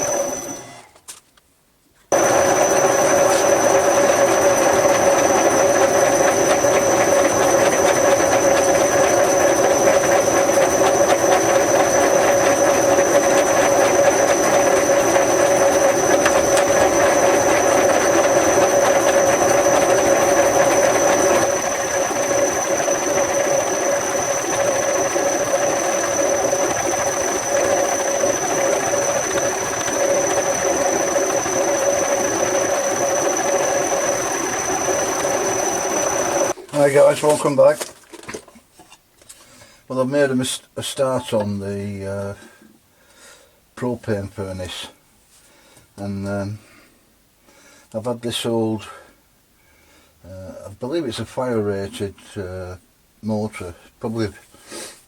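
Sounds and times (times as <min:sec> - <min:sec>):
milling machine whining: 0:00.0 - 0:01.0, 0:02.1 - 0:37.4.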